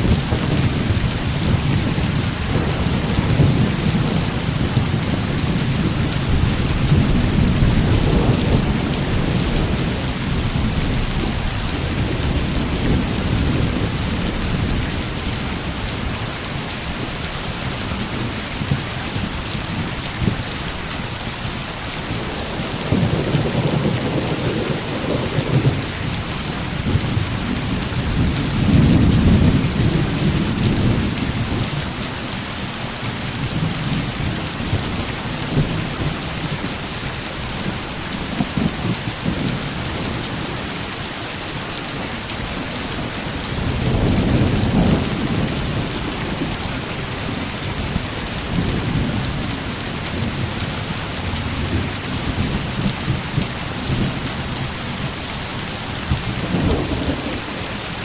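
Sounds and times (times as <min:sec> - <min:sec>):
low thunder rumbling: 0:00.0 - 0:20.9, 0:22.0 - 0:32.4, 0:33.1 - 0:40.8, 0:42.5 - 0:54.8, 0:55.6 - 0:58.0
heavy rain: 0:00.0 - 0:58.0.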